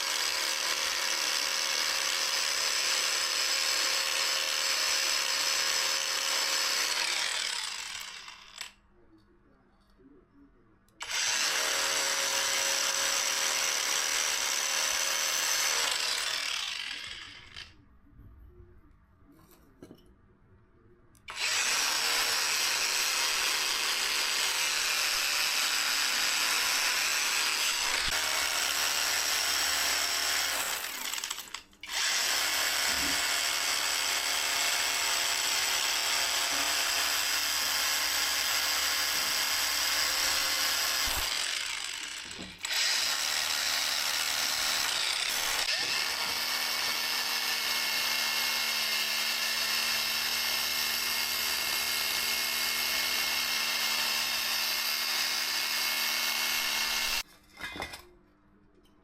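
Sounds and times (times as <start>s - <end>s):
power tool running: 0.0s - 8.8s, 11.0s - 17.7s, 21.3s - 57.2s.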